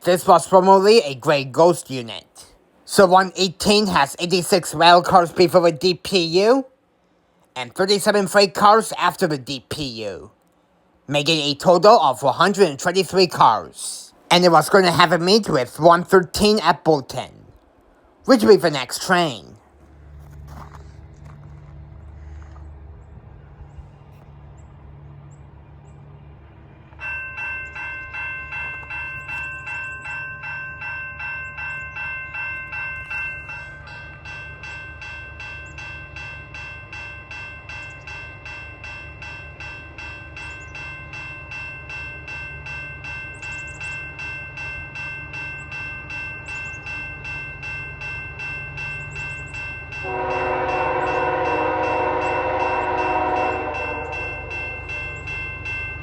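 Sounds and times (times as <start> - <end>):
crossing warning bells ringing: 0.0 - 7.0, 7.6 - 22.4, 23.2 - 56.0
locomotive air horn: 50.0 - 54.7.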